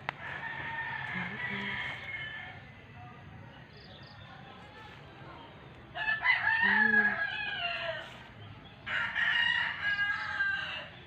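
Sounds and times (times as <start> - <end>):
rooster crowing: 0.2 - 2.6, 6.0 - 8.2, 8.9 - 10.9.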